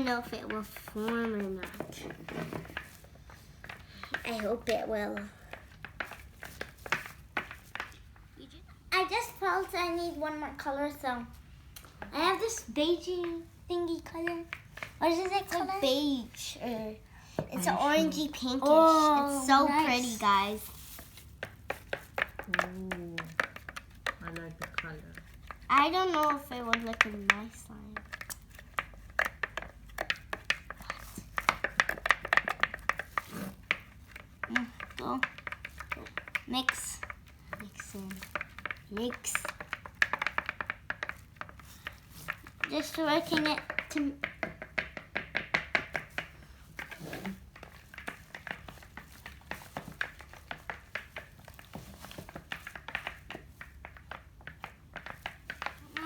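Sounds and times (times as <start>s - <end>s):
sticky slime clicking and crackling: 17.6s - 56.0s.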